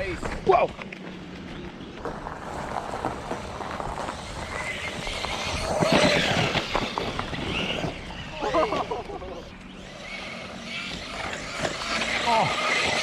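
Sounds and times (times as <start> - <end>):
tyres spinning on ice: 2.1 - 13.0
toy truck motor whining: 3.1 - 13.0.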